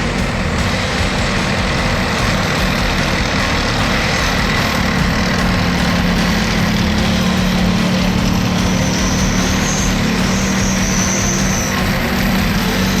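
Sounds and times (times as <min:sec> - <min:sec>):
tank engine running: 0:00.0 - 0:13.0.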